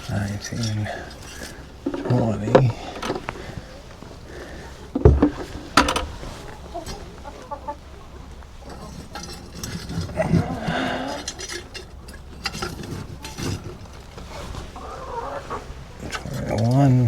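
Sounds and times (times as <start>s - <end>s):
chickens clucking: 0.0s - 17.0s.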